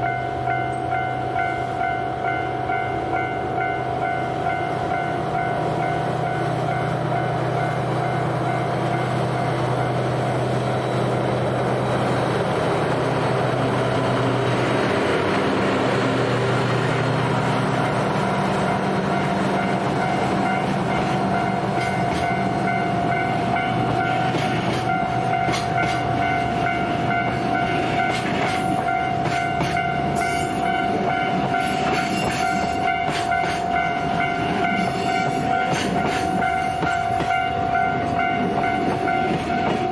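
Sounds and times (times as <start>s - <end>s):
level crossing warning bell: 0.0s - 10.9s, 16.6s - 39.9s
diesel train engine drone: 0.0s - 39.9s
wheels clicking over rail joints: 12.9s - 39.9s.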